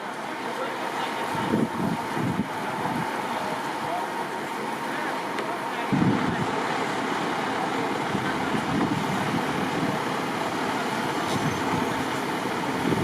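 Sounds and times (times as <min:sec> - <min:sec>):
wind buffeting microphone: 0:01.3 - 0:03.1, 0:05.9 - 0:06.5, 0:08.0 - 0:10.3, 0:11.2 - 0:13.0.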